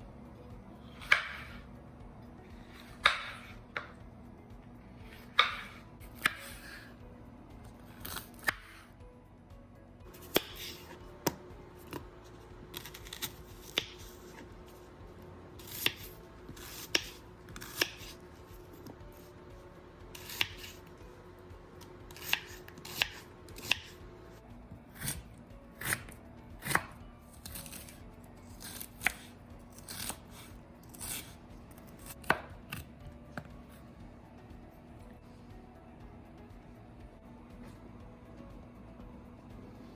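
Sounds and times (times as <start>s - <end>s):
knife chopping on a cutting board: 0.9s - 1.7s, 2.6s - 4.0s, 5.1s - 6.9s, 8.0s - 8.9s, 10.2s - 14.9s, 15.6s - 19.4s, 20.1s - 20.9s, 21.8s - 24.0s, 24.9s - 33.5s.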